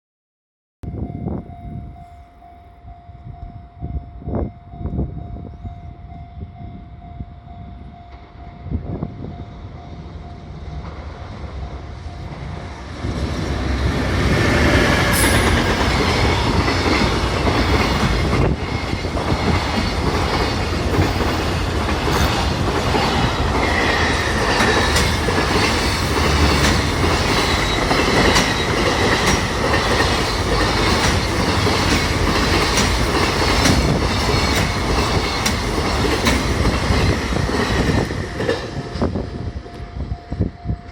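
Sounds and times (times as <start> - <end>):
freight train rumble: 0.8 - 40.9
wheels clacking over rail joints: 10.7 - 38.9.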